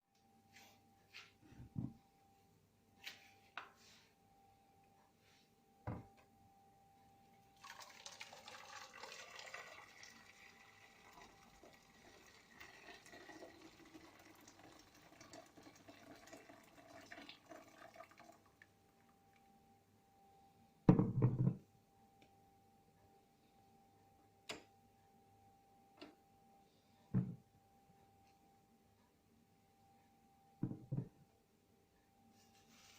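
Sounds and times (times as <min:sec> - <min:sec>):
water pouring into a vessel: 0:07.6 - 0:19.1.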